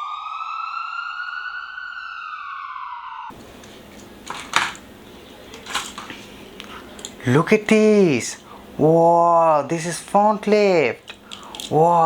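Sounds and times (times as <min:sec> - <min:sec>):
siren wail: 0:00.0 - 0:03.3.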